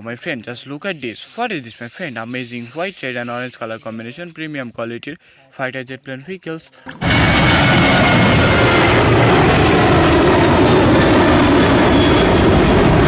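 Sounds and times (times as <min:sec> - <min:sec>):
loud steady roaring: 0:07.0 - 0:13.0.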